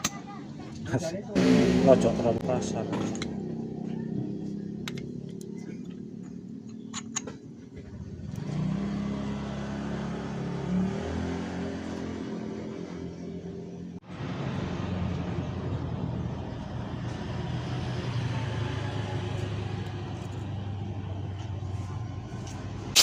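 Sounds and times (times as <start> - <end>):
motorcycle engine running: 1.4 - 10.8.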